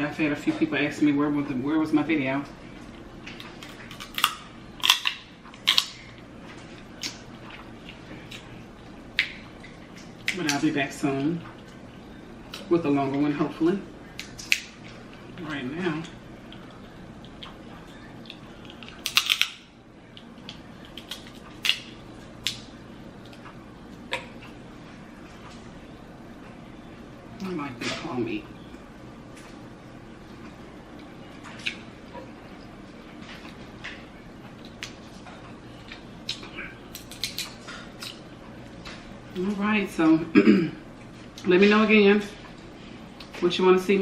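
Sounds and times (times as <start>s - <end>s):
sharp crackling clicks of eating: 2.9s - 10.6s, 14.1s - 15.3s, 16.0s - 24.6s, 30.4s - 32.3s, 33.2s - 39.1s
eating noises: 16.0s - 24.6s.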